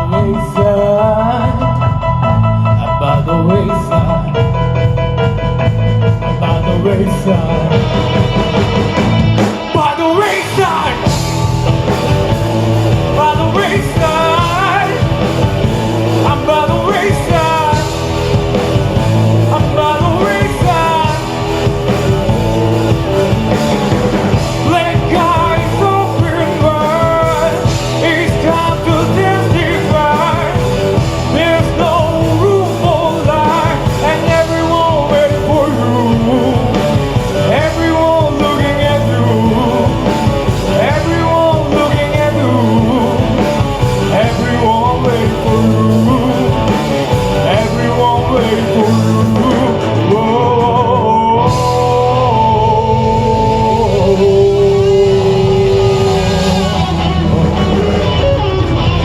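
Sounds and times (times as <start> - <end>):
bass guitar: 0.0 - 59.0
drums: 0.0 - 59.0
electric guitar: 0.0 - 59.0
keyboard: 0.0 - 59.0
person singing: 0.0 - 59.0.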